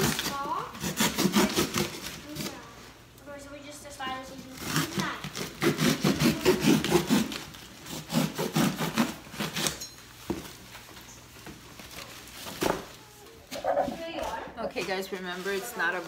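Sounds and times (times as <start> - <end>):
knife sawing cardboard: 0.0 - 2.6, 4.5 - 9.8.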